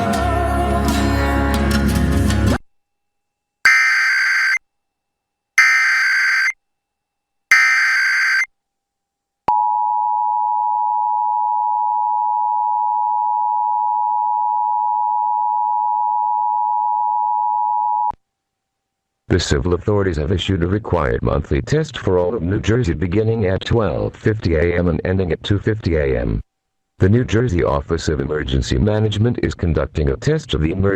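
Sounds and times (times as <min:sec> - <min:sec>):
data bursts: 0:03.7 - 0:04.6, 0:05.6 - 0:06.5, 0:07.5 - 0:08.5
two-tone attention signal: 0:03.7 - 0:04.6, 0:05.6 - 0:06.5, 0:07.5 - 0:08.5.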